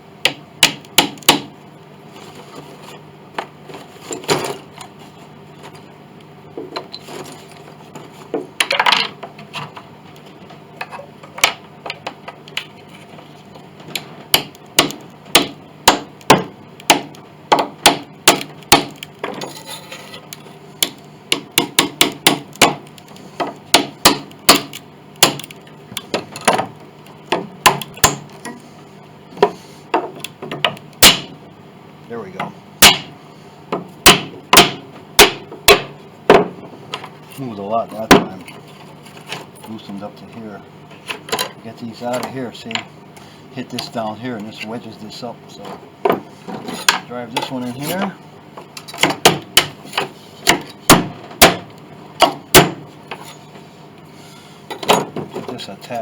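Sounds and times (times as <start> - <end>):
hammer striking wooden wedges: 0.2 - 1.5, 13.9 - 19.6, 20.8 - 28.6, 29.4 - 31.3, 32.4 - 37.1, 37.9 - 38.4, 48.8 - 53.4.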